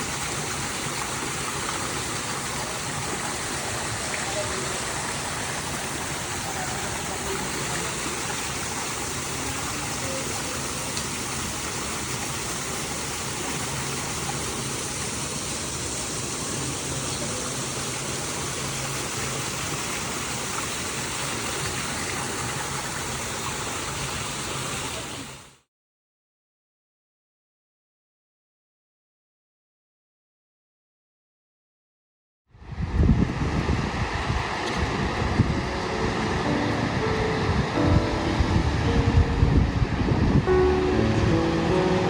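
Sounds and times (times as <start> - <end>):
steady rushing noise: 32.6 - 42.0.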